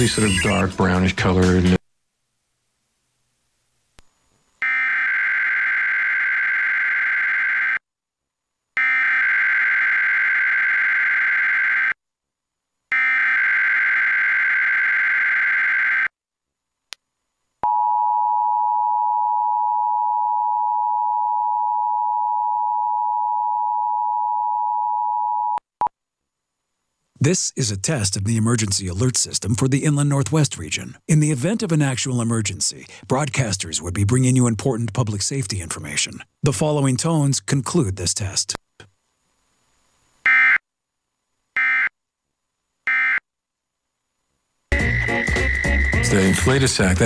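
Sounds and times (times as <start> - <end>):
buzzing digital data bursts: 0.0 - 0.6.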